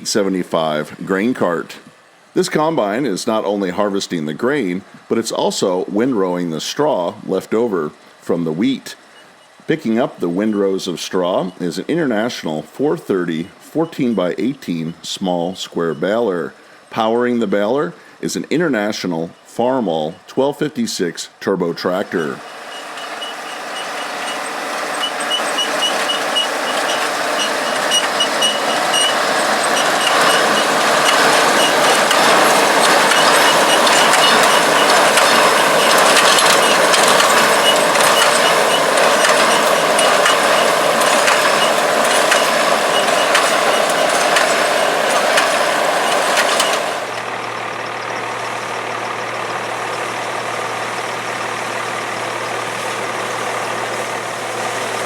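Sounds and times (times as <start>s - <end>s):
tractor diesel engine under load: 0.0s - 55.0s
baler running: 21.9s - 55.0s
fast high ticking: 22.2s - 54.0s.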